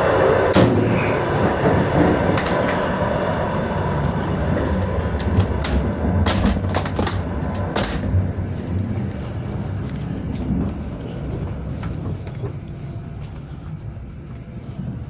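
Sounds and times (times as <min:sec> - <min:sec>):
train carriage rumbling on track: 0:00.0 - 0:15.0
clanks and rattles: 0:00.5 - 0:09.3.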